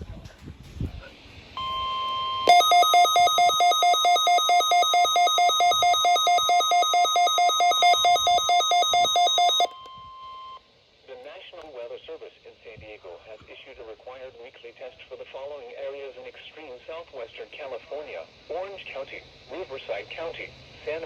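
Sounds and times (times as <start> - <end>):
rapid two-pitch alarm beeping: 1.6 - 10.6
steady warning alarm tone: 1.6 - 10.6.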